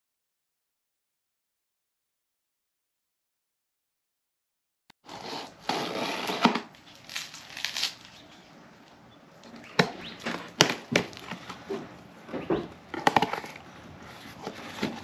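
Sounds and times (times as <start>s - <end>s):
crinkly packaging rustling: 5.5s - 12.0s.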